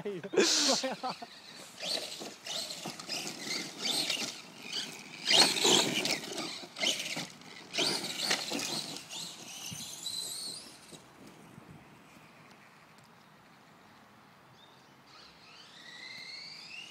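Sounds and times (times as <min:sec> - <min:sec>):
tyres spinning and spraying dirt: 0:00.4 - 0:11.5
electric motors whining: 0:00.8 - 0:11.0, 0:15.1 - 0:16.9.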